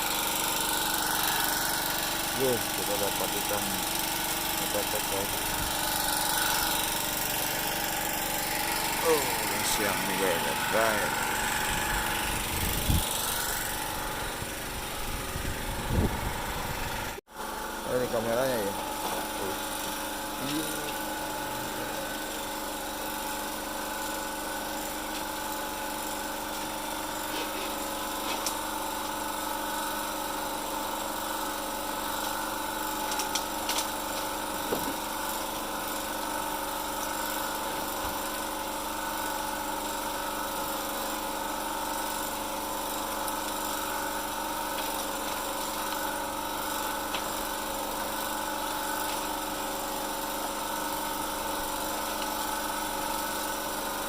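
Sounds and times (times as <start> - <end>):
small engine droning: 0.0 - 54.0.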